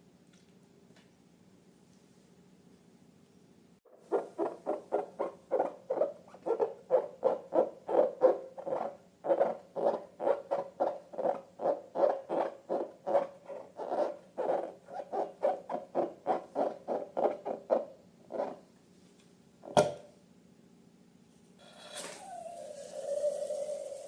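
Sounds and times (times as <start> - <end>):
rubber balloon squeaking: 4.1 - 18.6.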